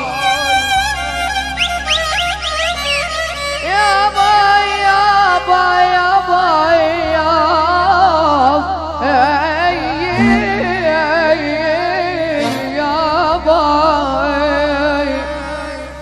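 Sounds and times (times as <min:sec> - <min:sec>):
low drone: 0:09.7 - 0:14.8
ornamented wavering melody: 0:10.0 - 0:14.4.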